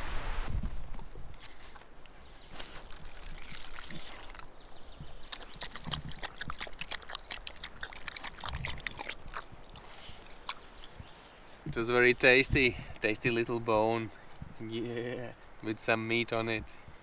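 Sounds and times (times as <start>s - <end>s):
dog chewing a bone: 2.6s - 11.0s.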